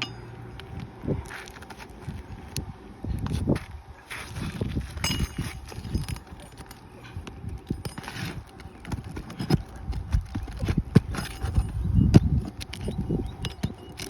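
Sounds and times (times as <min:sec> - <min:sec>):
wind rumble on microphone: 0:00.6 - 0:14.0
knocks and scraping on shingles: 0:03.3 - 0:14.0.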